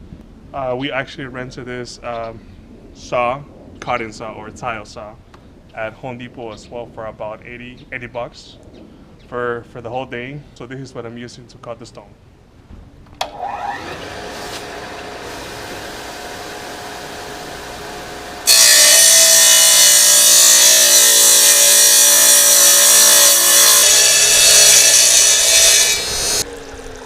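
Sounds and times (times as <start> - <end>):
tile saw motor hum: 13.2 - 27.0
saw blade grinding through stone: 13.4 - 27.0.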